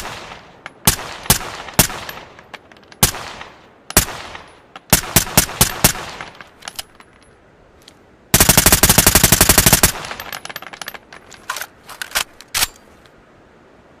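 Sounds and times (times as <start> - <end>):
light metallic clinks: 6.3 - 8.0, 10.0 - 13.1
automatic gunfire burst: 8.4 - 10.2.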